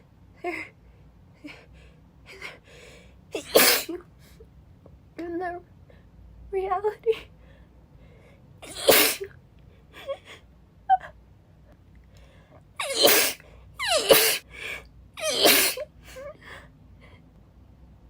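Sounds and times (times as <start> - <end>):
woman sneezing: 3.4 - 4.0, 8.6 - 9.3, 12.8 - 14.4, 15.2 - 15.9.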